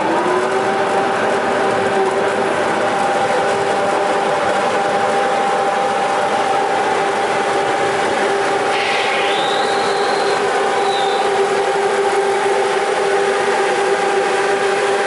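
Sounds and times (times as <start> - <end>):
belt sander running: 0.0 - 15.0
high whine: 2.9 - 13.2.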